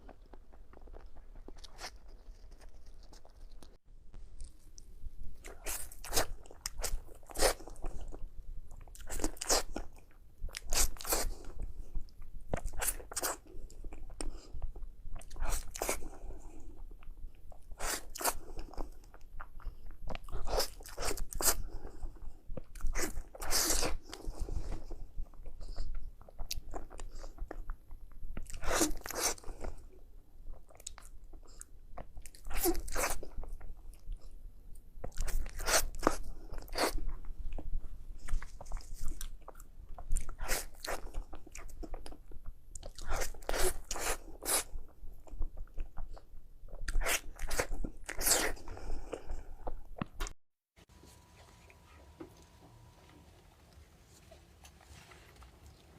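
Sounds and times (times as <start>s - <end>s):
person biting and chewing food: 0.0s - 34.4s, 35.0s - 50.4s.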